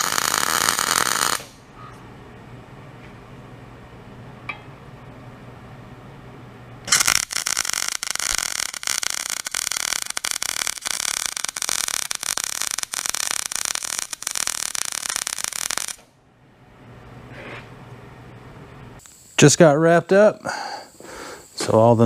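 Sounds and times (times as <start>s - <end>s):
arc welder crackling hiss: 0.0s - 1.6s, 6.9s - 16.1s, 19.0s - 19.8s, 20.4s - 22.0s.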